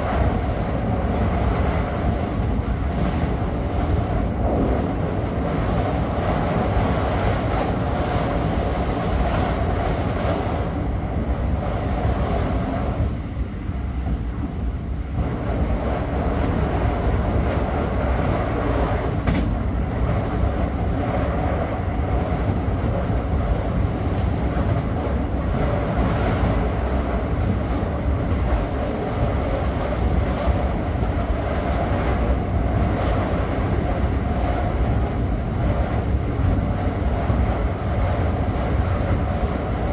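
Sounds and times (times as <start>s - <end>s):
train wheels rumbling on track: 0.0s - 39.9s.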